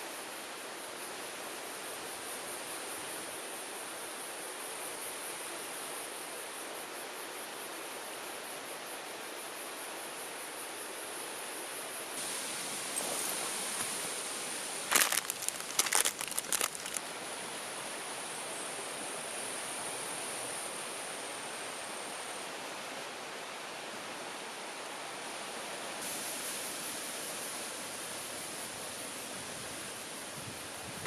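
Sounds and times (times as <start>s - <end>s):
stream running: 12.1s - 31.0s
crinkling and clicking: 14.9s - 17.1s.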